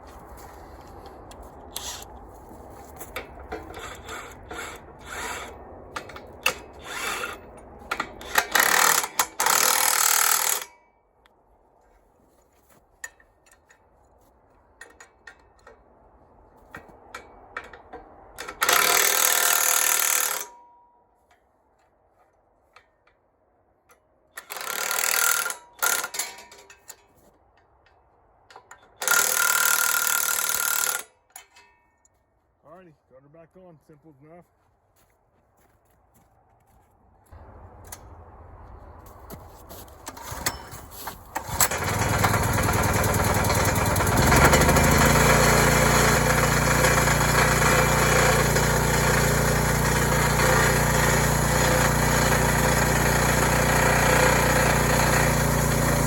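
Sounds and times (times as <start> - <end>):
power tool driving bolts: 3.2 - 10.8, 16.7 - 20.6, 24.3 - 27.2, 28.5 - 31.7, 40.0 - 56.0.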